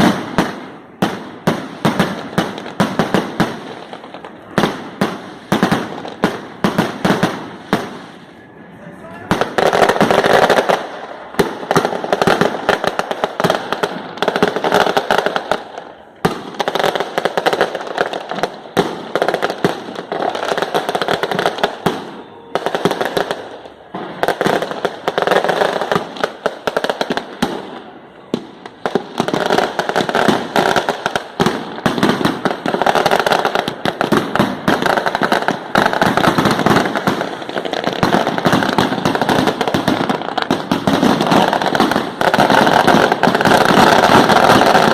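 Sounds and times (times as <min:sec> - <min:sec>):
fireworks bangs and crackles: 0:00.0 - 0:44.9.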